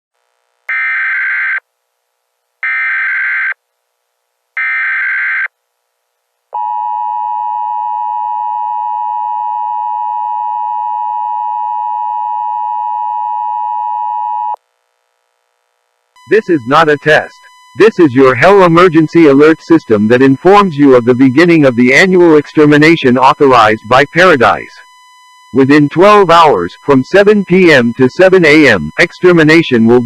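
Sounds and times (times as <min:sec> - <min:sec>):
digital data bursts: 0:16.3 - 0:24.8.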